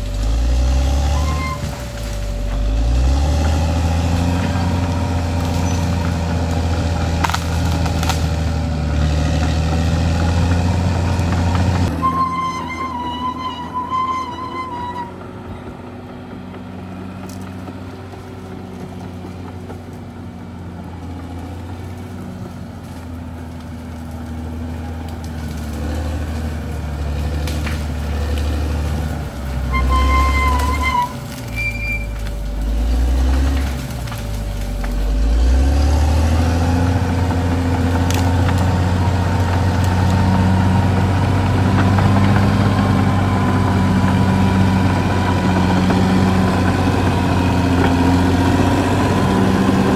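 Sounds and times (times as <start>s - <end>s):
bulldozer diesel engine lugging: 0.0s - 49.9s
brief high squeals: 1.1s - 1.8s, 12.0s - 15.2s, 29.7s - 32.2s.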